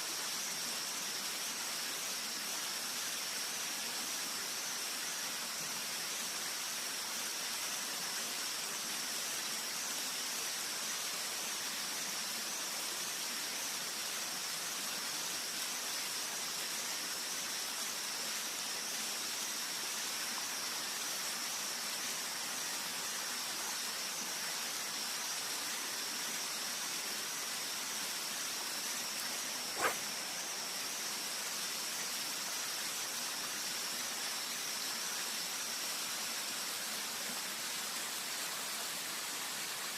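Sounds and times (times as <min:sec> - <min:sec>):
river hiss: 0:00.0 - 0:39.9
thin high whine: 0:28.9 - 0:31.0.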